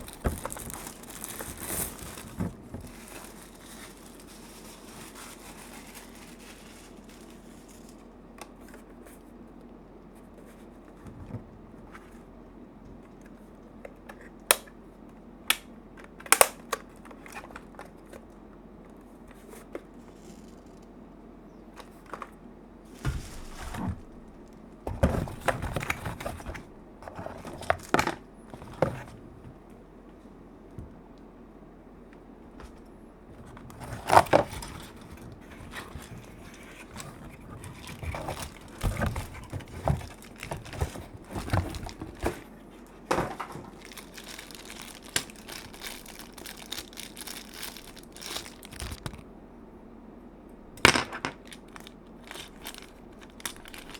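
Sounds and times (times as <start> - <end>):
plastic and paper crinkling: 0.0 - 9.1, 22.9 - 29.2, 32.6 - 49.2, 51.2 - 53.9.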